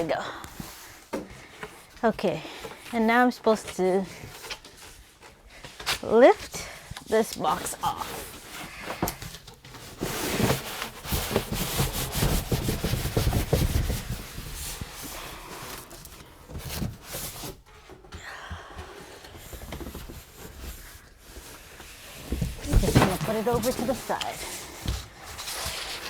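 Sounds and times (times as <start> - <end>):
cardboard scraping and rubbing: 7.2 - 17.9, 19.4 - 26.0
knocks and rustles: 7.4 - 18.1, 19.3 - 26.0.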